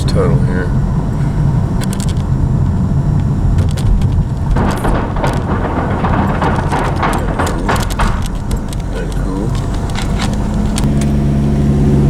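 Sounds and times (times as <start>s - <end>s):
car road noise rumble: 0.0s - 12.0s
rough clatter: 1.7s - 12.0s
sharp ticks and rattles: 1.8s - 12.0s.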